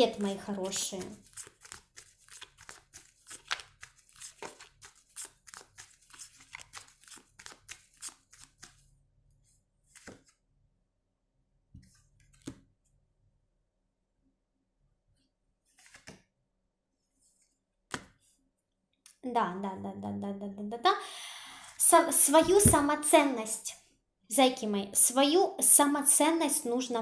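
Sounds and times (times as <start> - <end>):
cards being shuffled: 0.1 - 8.8, 9.9 - 10.4, 12.2 - 12.6, 15.7 - 16.3, 17.9 - 18.3.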